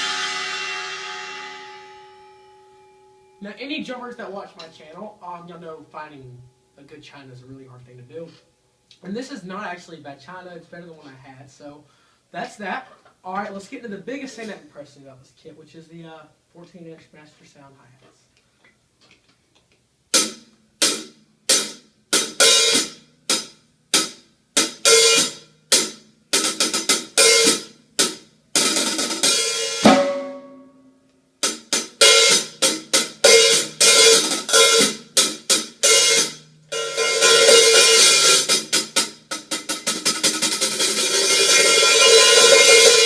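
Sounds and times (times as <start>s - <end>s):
hi-hats played with stick: 0.0s - 2.1s, 20.2s - 30.7s, 31.4s - 43.0s.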